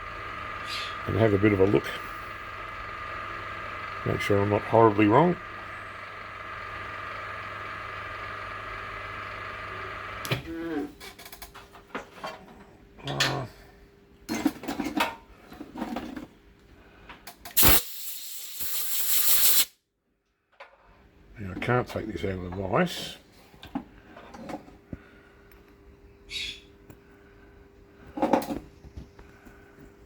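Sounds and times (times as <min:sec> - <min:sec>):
milling machine motor humming: 0:00.0 - 0:10.4.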